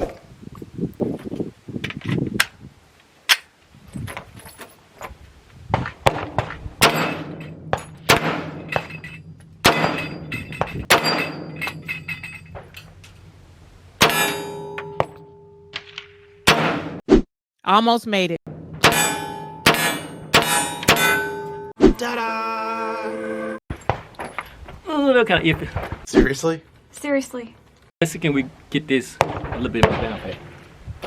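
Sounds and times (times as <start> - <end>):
pistol shots: 8.1 - 8.7.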